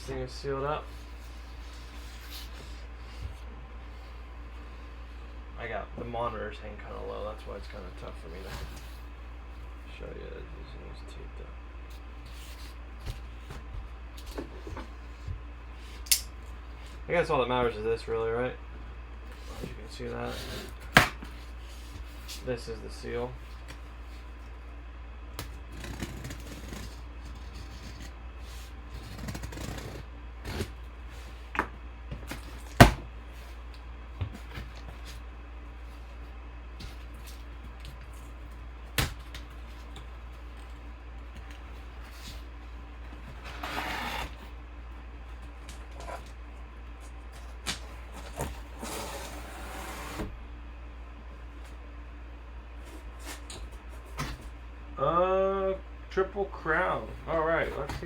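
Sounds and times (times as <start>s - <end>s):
steady low hum: 0.0s - 58.0s
cardboard box scrapes and clicks: 25.7s - 30.8s, 43.3s - 44.5s, 47.8s - 50.3s
cardboard box rustling and scraping: 43.1s - 44.6s, 47.4s - 50.4s, 57.4s - 58.0s.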